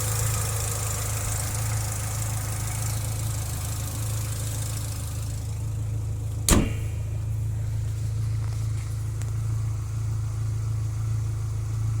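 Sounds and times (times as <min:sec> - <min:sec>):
car engine idling: 0:00.0 - 0:12.0
sharp bang: 0:06.5 - 0:07.5.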